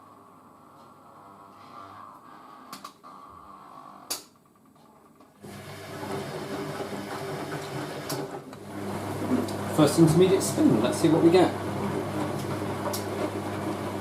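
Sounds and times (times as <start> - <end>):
washing machine quiet hum: 4.4 - 14.0
drain pump grinding hum: 5.4 - 14.0.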